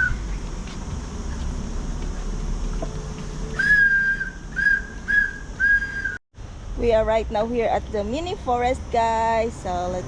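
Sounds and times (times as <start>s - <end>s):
low rumbling noise: 0.0s - 9.6s
high whistled notes: 3.5s - 6.2s.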